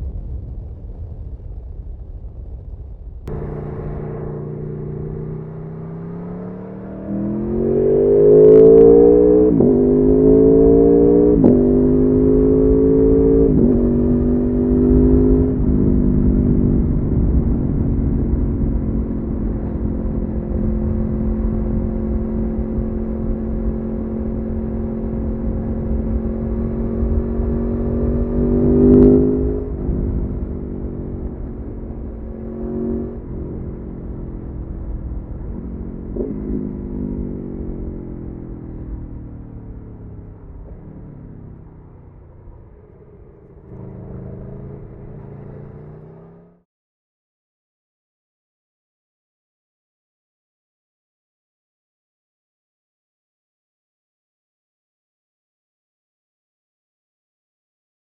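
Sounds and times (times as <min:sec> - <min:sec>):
motorcycle throttle blips: 0:03.3 - 0:46.6
motorcycle engine accelerating: 0:03.3 - 0:46.7.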